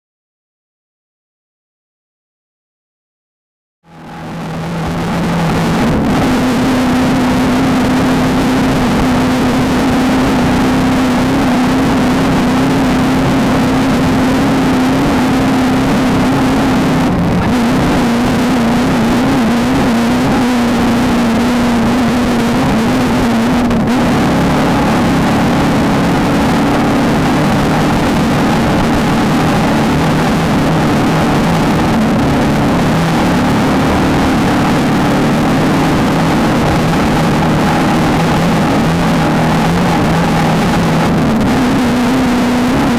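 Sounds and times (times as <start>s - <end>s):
race car engine running hard: 3.8s - 42.9s.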